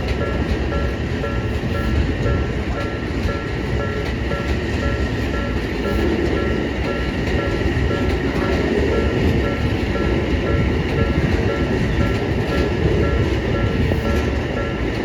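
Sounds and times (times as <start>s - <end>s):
level crossing warning bell: 0.0s - 15.0s
train rumbling over rails: 0.0s - 15.0s.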